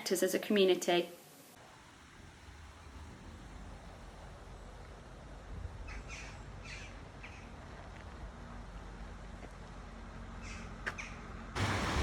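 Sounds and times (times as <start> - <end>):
bird calling: 5.8 - 7.6, 10.4 - 11.2.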